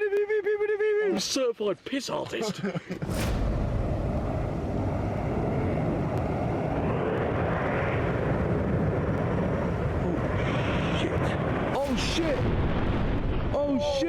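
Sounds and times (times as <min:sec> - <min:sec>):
low roar of erupting volcano: 0:03.0 - 0:14.0.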